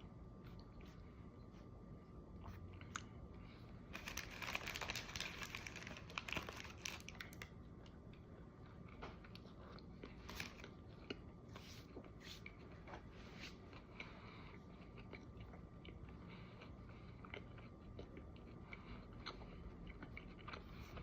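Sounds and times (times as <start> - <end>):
paper wrapper crinkling: 3.9 - 7.5
chewing: 13.7 - 21.0.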